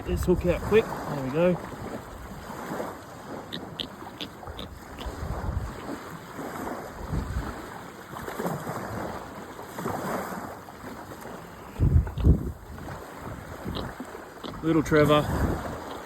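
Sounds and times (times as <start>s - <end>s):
water washing at shore: 0.0s - 16.0s
wind buffeting microphone: 0.0s - 16.0s.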